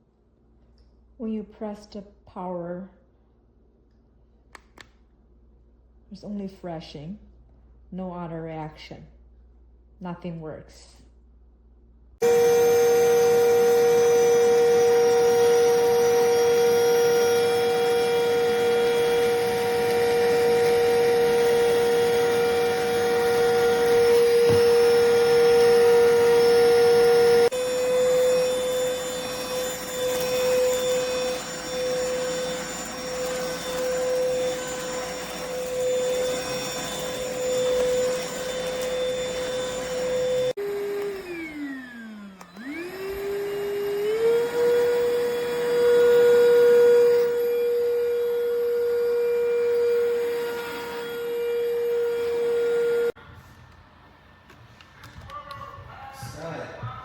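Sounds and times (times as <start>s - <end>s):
vacuum cleaner motor whining: 12.2s - 57.0s.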